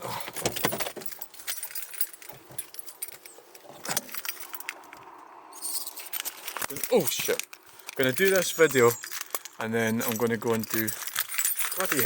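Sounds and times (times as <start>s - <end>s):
small objects clinking and rattling: 0.3s - 5.0s, 5.6s - 12.0s.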